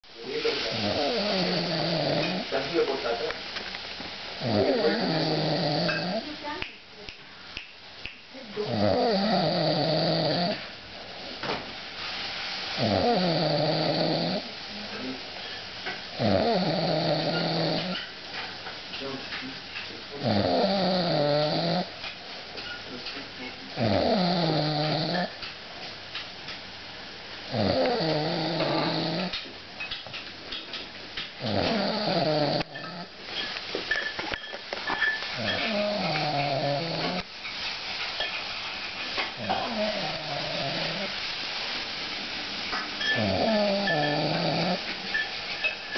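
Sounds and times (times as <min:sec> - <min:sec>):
dog breathing: 0:00.6 - 0:02.6, 0:04.4 - 0:06.3, 0:27.5 - 0:29.4, 0:31.4 - 0:33.1, 0:35.3 - 0:37.2, 0:39.4 - 0:41.2, 0:43.0 - 0:44.8
pet snoring loudly: 0:00.6 - 0:02.6, 0:04.4 - 0:06.3, 0:08.6 - 0:10.7, 0:12.8 - 0:14.5, 0:16.2 - 0:18.0, 0:20.2 - 0:21.9, 0:23.8 - 0:25.3, 0:27.5 - 0:29.4, 0:31.4 - 0:33.1, 0:35.4 - 0:37.3, 0:39.4 - 0:41.2, 0:43.0 - 0:44.9.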